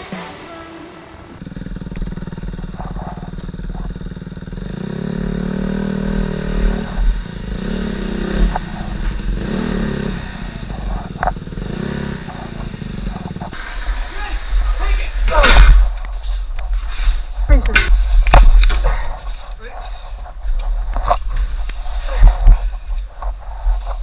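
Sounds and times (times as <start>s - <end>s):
dirt bike engine revving: 0.0s - 16.1s.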